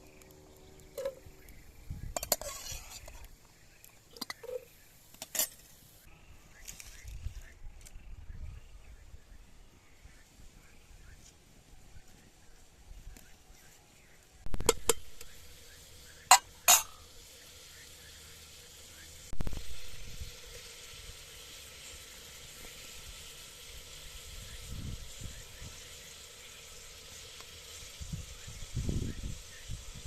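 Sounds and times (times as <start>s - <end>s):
food sizzling in a frying pan: 2.0s - 6.1s, 14.5s - 30.0s.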